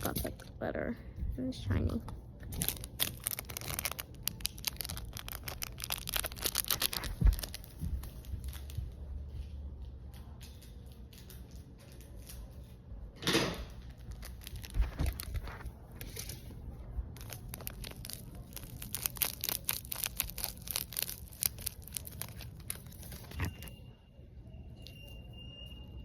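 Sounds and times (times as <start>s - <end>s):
slime stretching and squishing: 1.8s - 9.0s, 13.9s - 23.7s.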